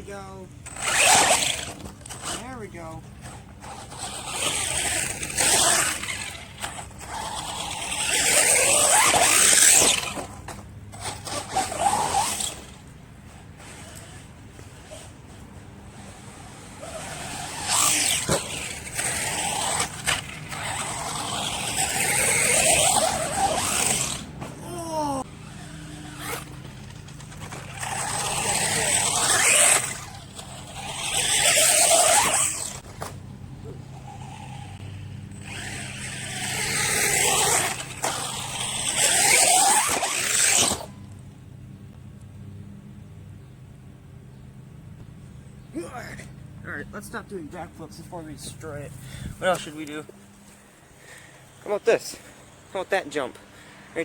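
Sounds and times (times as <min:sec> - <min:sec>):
tires churning dirt: 0:00.0 - 0:54.0
electric motor whine: 0:00.6 - 0:42.7.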